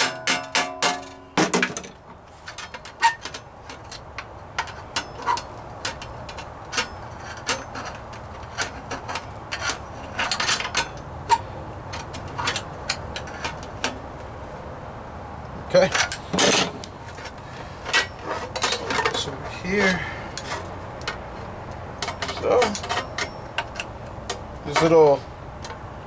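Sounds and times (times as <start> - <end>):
hammer tapping metal: 0.0 - 1.8.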